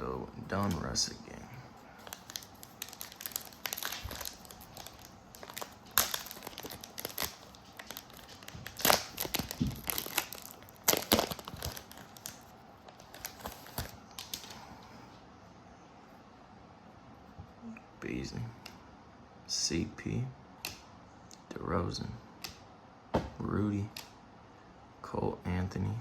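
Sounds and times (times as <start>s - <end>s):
foil wrapper tearing and crinkling: 2.0s - 14.6s.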